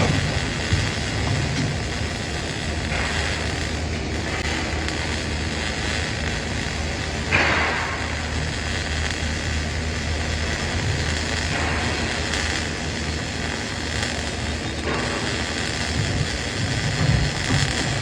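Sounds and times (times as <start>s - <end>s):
welding arc hissing: 0.0s - 18.0s.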